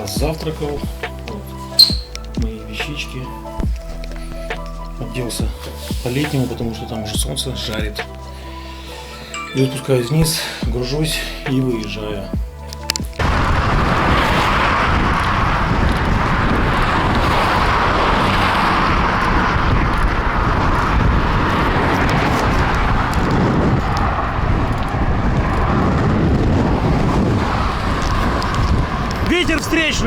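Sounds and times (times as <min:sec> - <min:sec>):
wind rushing over microphone: 0:10.2 - 0:30.0.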